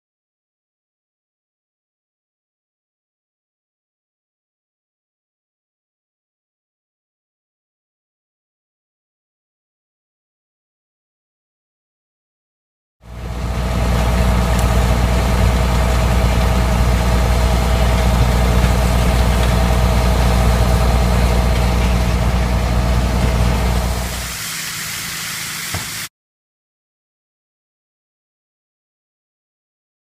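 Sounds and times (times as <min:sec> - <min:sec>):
farm machinery engine humming: 0:13.1 - 0:26.0.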